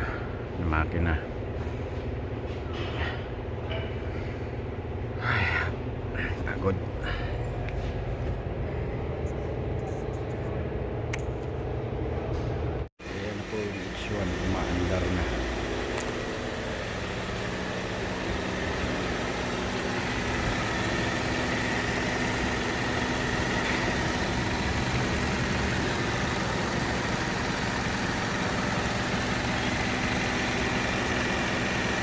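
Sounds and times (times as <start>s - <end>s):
van engine idling: 13.0s - 32.0s.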